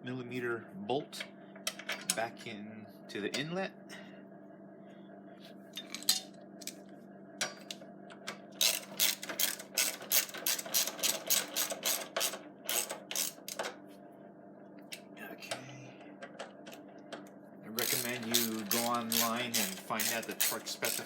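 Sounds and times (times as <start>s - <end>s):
ratchet wrench clicking: 8.6s - 13.6s, 17.8s - 21.0s.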